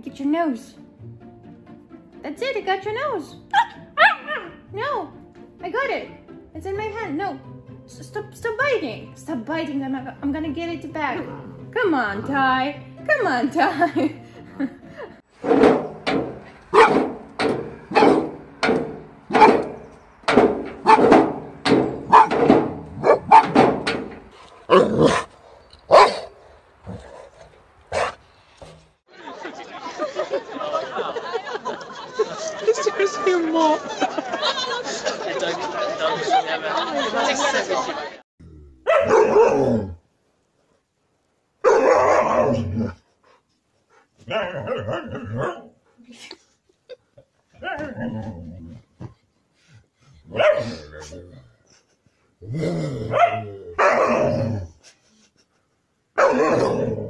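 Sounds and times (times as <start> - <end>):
dog barking: 3.6 - 4.5, 16.7 - 17.0, 17.9 - 18.3, 19.3 - 19.7, 20.8 - 21.2, 22.1 - 22.4, 23.0 - 23.6, 25.9 - 26.3, 38.8 - 39.7, 41.6 - 42.6, 44.3 - 45.7, 50.3 - 50.8, 53.1 - 54.2, 56.2 - 56.8
dog crying: 3.6 - 4.6.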